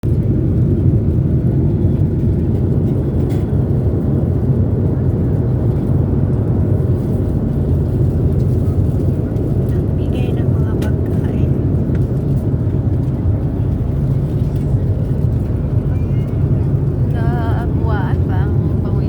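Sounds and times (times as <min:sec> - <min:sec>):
airliner cabin noise: 0:00.0 - 0:19.0.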